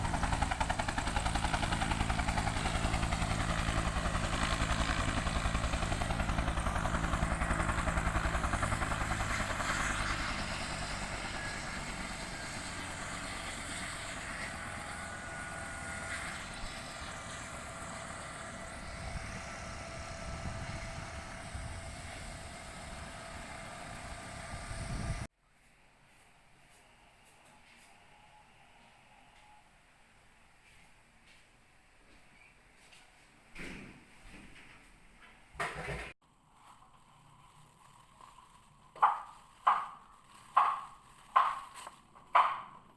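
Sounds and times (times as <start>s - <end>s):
helicopter rotor beating: 0.0s - 25.3s
turbine whine and hiss: 7.6s - 25.3s.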